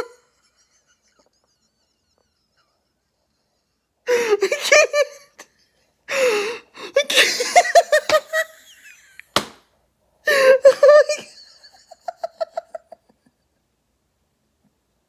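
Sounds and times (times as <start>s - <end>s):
person laughing hard: 4.1s - 5.5s, 6.9s - 8.8s, 10.3s - 13.2s
sharp smack: 9.4s - 9.6s.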